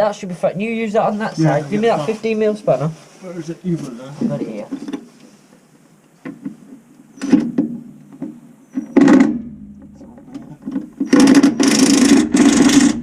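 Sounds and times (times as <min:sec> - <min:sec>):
power tool running: 0:11.0 - 0:13.0.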